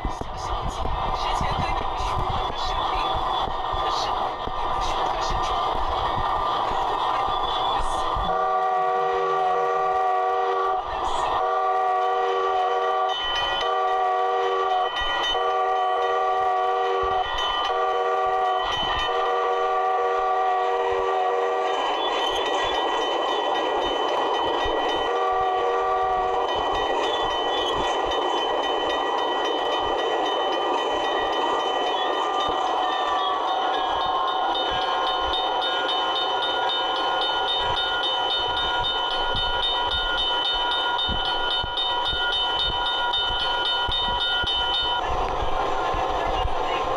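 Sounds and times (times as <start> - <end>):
steam train whistle blasts: 7.8 - 22.3, 24.9 - 26.5.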